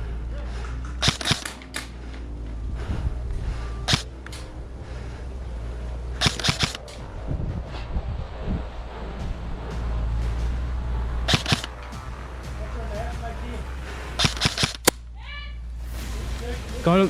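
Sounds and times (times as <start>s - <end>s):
low rumble: 0.0s - 17.0s
airsoft gun shots: 1.0s - 1.9s, 3.9s - 4.4s, 6.2s - 7.0s, 11.3s - 11.8s, 14.2s - 15.0s.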